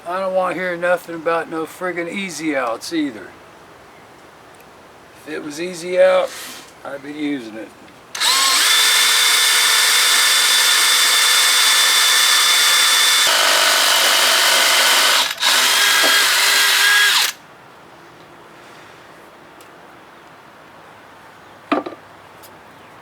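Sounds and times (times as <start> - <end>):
electric drill whining: 8.2 - 17.4.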